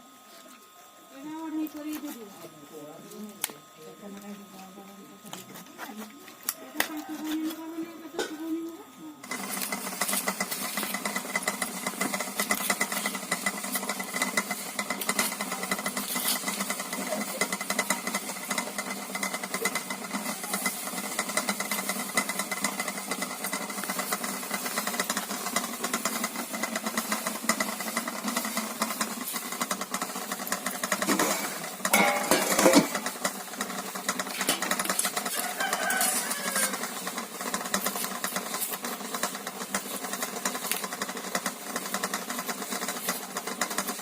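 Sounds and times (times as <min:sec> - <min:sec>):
machine rattling: 0:09.2 - 0:44.0.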